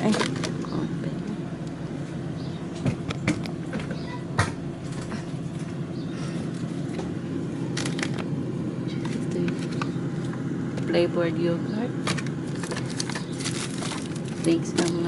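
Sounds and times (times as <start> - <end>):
food packages handled in fridge: 0.0 - 10.6, 12.0 - 15.0
steady low hum: 0.0 - 15.0.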